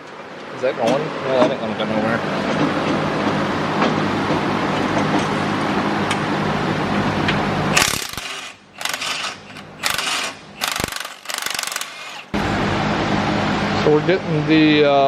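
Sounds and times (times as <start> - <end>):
ratchet wrench clicking: 7.8 - 12.4.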